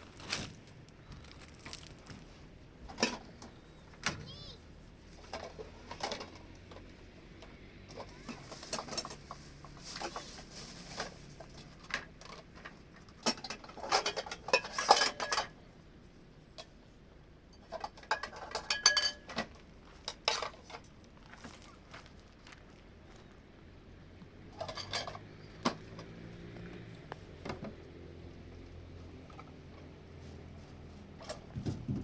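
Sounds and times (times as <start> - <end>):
clinks and knocks of objects: 2.9 - 4.4, 5.2 - 15.6, 17.5 - 22.6, 24.5 - 26.8.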